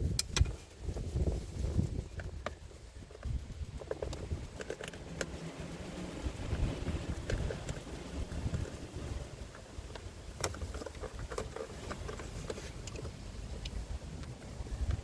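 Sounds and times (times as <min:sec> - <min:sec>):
low handling rumble: 0:03.2 - 0:09.8.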